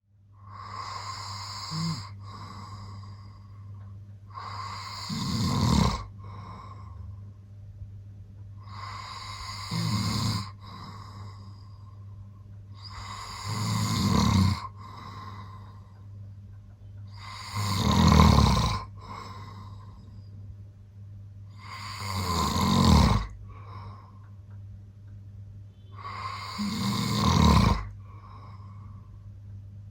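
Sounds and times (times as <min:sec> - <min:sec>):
steady low hum: 0:00.0 - 0:29.9
man snoring: 0:00.4 - 0:03.6, 0:04.3 - 0:07.0, 0:08.6 - 0:11.7, 0:12.8 - 0:15.9, 0:17.1 - 0:20.1, 0:21.5 - 0:24.1, 0:25.9 - 0:29.0.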